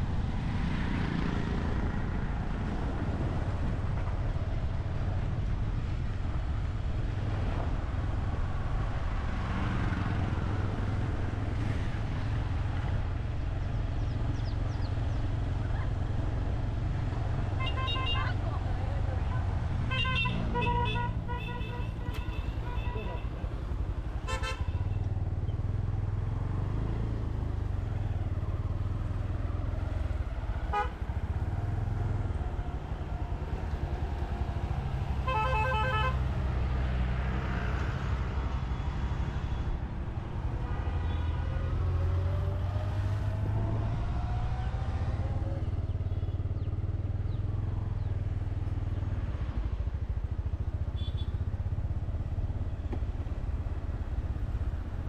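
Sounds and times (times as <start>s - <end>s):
motorcycle engine rumble: 0.0s - 37.3s, 38.0s - 55.0s
vehicle horns honking: 17.6s - 18.4s, 19.9s - 23.3s, 24.2s - 25.0s, 30.7s - 30.9s, 35.2s - 36.2s, 51.0s - 51.4s.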